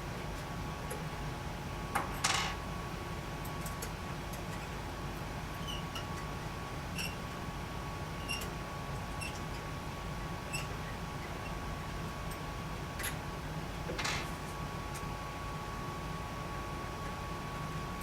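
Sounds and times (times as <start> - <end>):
steady electrical hum: 0.0 - 18.0
faint screw squeaks: 7.0 - 7.2, 8.2 - 8.5.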